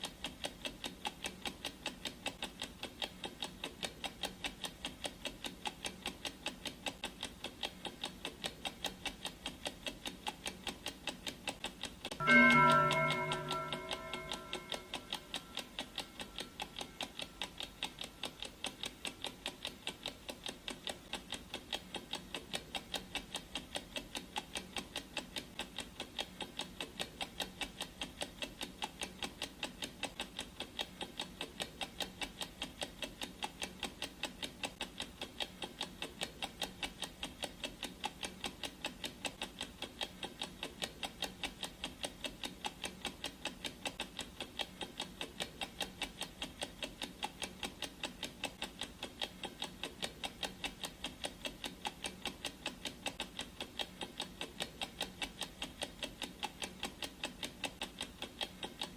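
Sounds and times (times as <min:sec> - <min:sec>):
clock ticking: 0:00.0 - 0:58.9.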